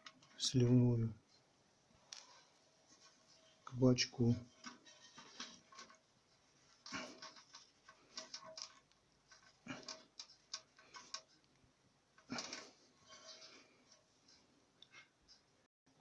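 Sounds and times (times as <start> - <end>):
plastic fittings clicking and knocking: 6.8 - 11.5.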